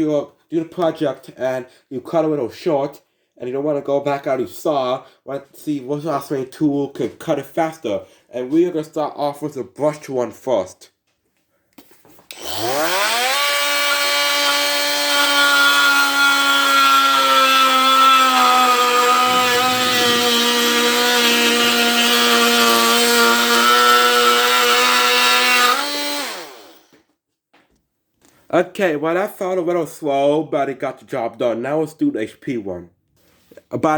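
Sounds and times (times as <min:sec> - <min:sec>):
oscillating multi-tool cutting wood: 0:12.3 - 0:26.9.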